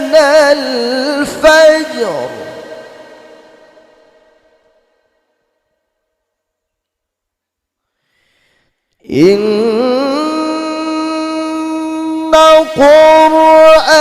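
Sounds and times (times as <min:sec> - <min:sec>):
man reciting melodically: 0:00.0 - 0:04.3, 0:09.0 - 0:14.0.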